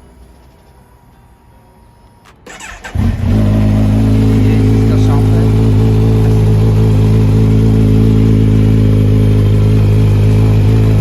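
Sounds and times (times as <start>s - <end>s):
motorcycle engine idling loudly: 2.6s - 11.0s.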